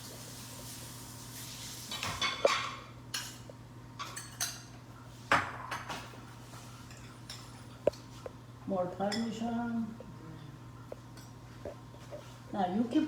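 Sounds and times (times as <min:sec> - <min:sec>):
faint steady hum: 0:00.0 - 0:13.0
utensils clinking against cookware: 0:01.9 - 0:04.8.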